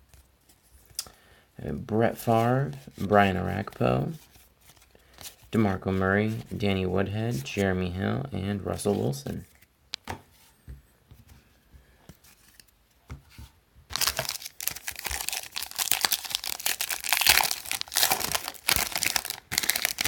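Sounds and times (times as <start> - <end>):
card pack wrapper tearing and crinkling: 13.9 - 20.0.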